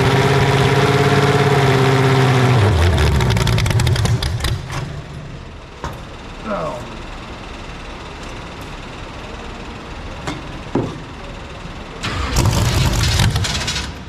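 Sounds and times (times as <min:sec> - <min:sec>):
car engine starting rough: 0:00.0 - 0:05.2, 0:12.0 - 0:14.0.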